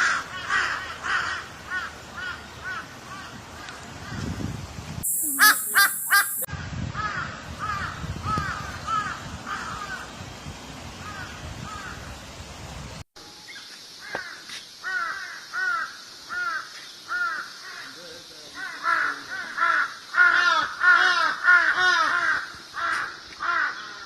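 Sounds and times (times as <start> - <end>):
crows cawing: 0.0 - 4.2, 5.4 - 6.4, 7.0 - 10.1, 14.0 - 18.0, 18.6 - 24.0.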